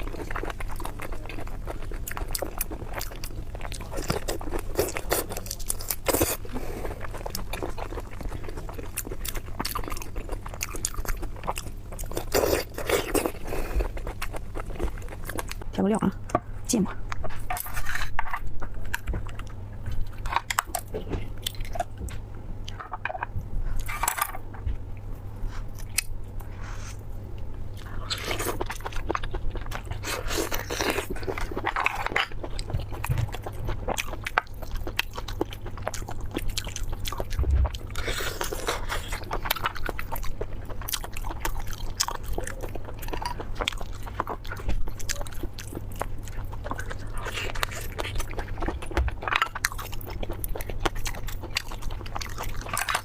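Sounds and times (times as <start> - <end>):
person chewing with crunches: 0.0 - 16.4, 17.1 - 53.0
low hum: 37.2 - 38.9.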